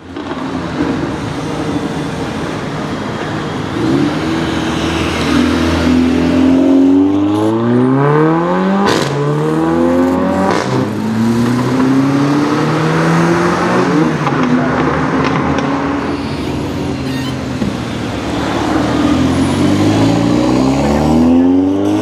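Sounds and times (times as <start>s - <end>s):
car engine accelerating hard: 3.6s - 22.0s.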